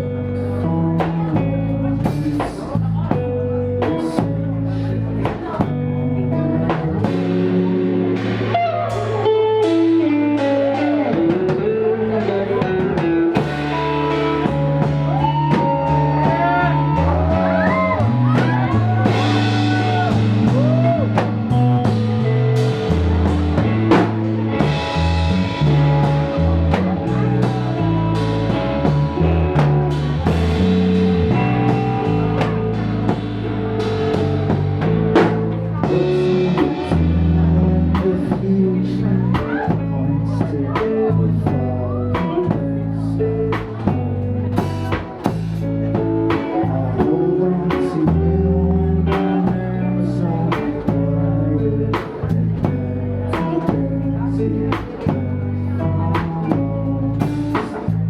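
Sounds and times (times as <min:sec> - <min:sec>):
live rock band playing: 0:00.0 - 0:58.0
sliding lead guitar notes: 0:00.0 - 0:58.0.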